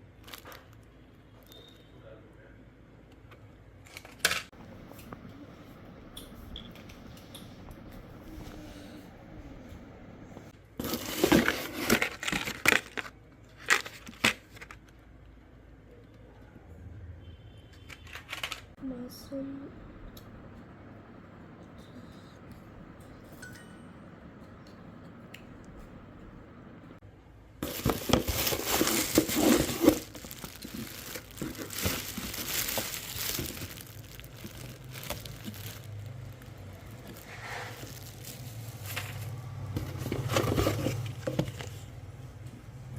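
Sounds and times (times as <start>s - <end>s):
packaging crinkling: 10.8s - 14.9s, 27.6s - 41.8s.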